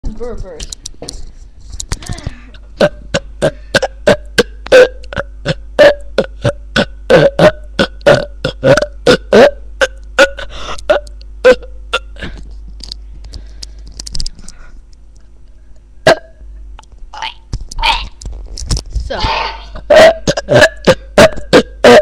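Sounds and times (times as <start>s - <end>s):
short loud burps: 2.8s - 12.4s, 16.0s - 16.4s, 19.2s - 22.0s.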